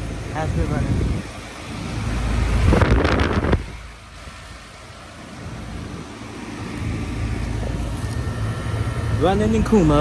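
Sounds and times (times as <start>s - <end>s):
heat pump units running: 0.0s - 10.0s
wind buffeting microphone: 0.4s - 4.6s.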